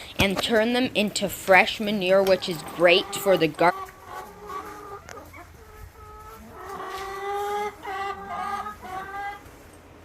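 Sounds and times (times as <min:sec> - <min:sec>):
chickens calling: 0:00.0 - 0:10.0.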